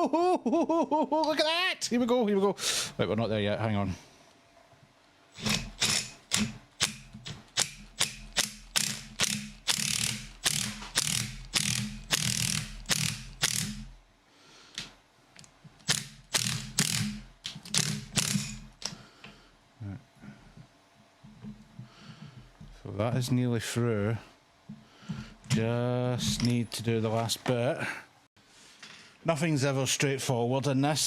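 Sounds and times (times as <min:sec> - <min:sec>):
ratchet wrench clicking: 0:05.4 - 0:13.9, 0:15.8 - 0:18.9.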